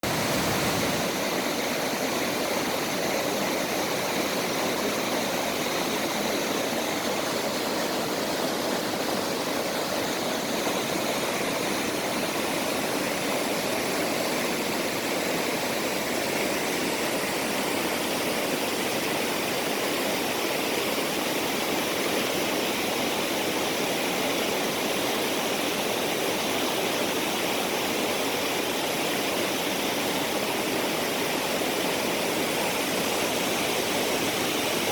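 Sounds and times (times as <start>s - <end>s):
stream water rushing: 0.0s - 34.9s.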